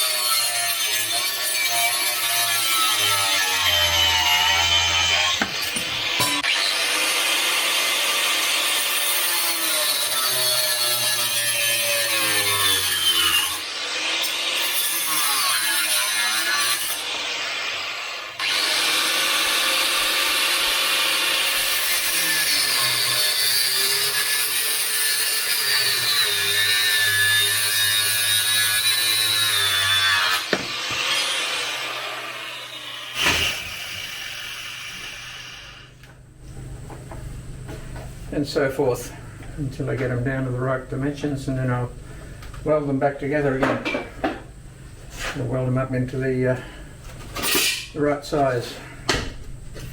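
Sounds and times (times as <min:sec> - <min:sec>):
power tool cutting steel: 0:00.0 - 0:36.0.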